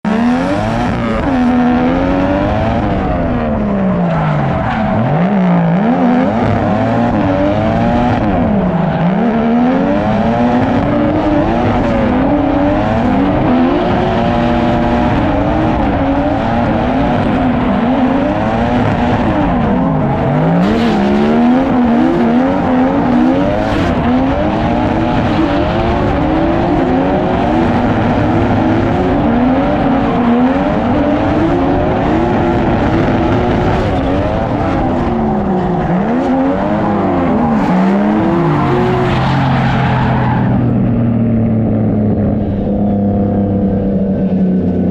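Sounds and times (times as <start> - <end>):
car engines revving: 0.0 - 44.9.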